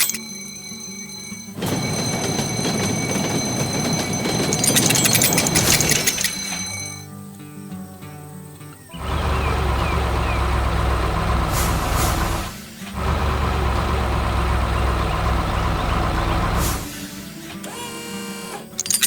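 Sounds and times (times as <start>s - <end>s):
heavy truck engine running: 1.5s - 6.7s, 9.0s - 18.6s
air hisses: 11.5s - 13.0s, 16.5s - 17.8s.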